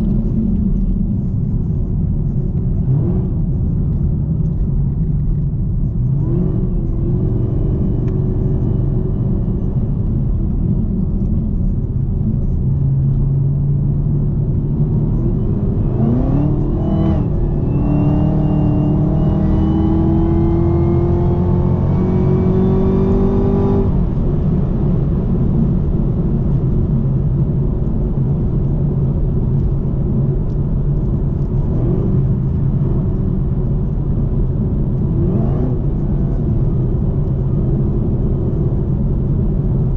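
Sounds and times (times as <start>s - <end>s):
supercharger whine: 0.0s - 39.9s
car engine revving: 2.8s - 4.6s, 12.4s - 24.3s.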